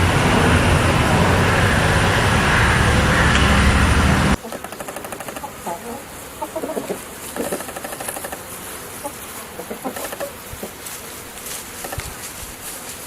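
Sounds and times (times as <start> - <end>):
outdoor background noise: 0.0 - 13.0
animal calls and chirps: 4.4 - 10.8
quick rattling pulses: 4.5 - 5.5, 7.4 - 8.5.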